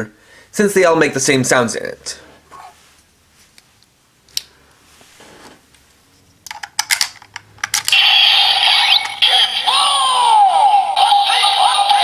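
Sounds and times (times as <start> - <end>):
plastic toy clicks: 6.5 - 8.0
electronic toy sound effect: 7.9 - 12.0.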